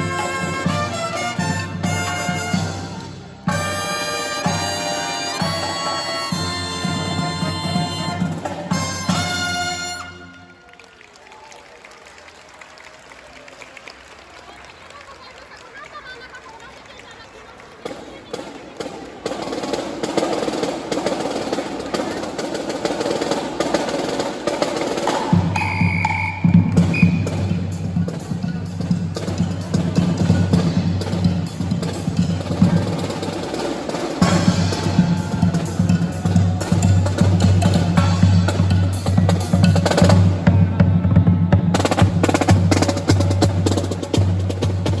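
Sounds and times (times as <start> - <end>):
snare drum strokes and rolls: 0.0 - 10.2, 17.8 - 45.0
brass band chord: 0.0 - 10.6, 34.1 - 40.0
crowd hum: 13.4 - 45.0.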